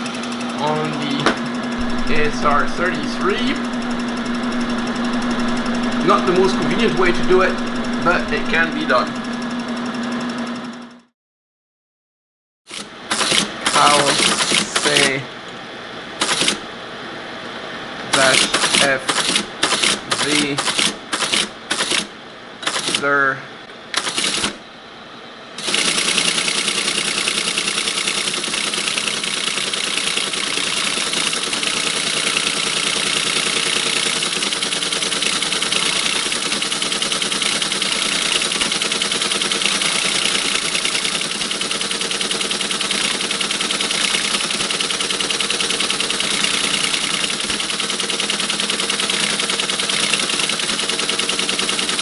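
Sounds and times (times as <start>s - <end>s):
teletype printing clatter: 12.7s - 15.2s, 16.2s - 16.6s, 18.1s - 23.2s, 23.9s - 24.6s, 25.6s - 52.0s.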